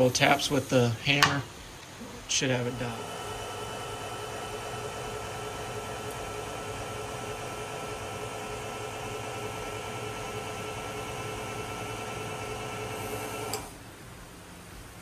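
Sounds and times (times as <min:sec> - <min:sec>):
milling machine motor whining hum: 0:00.0 - 0:13.8.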